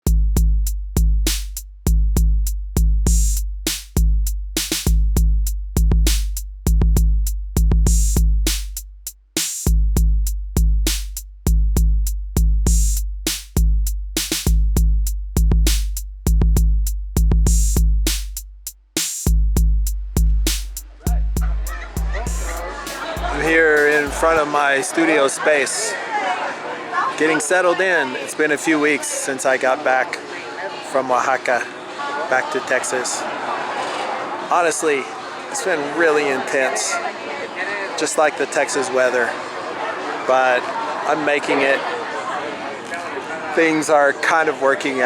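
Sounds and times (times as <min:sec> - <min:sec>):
electronic drum machine music: 0:00.0 - 0:24.6.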